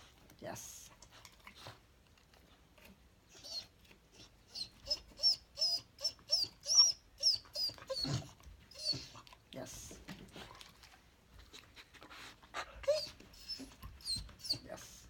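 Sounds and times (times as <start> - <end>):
dog whining: 3.3 - 9.4, 12.6 - 15.0.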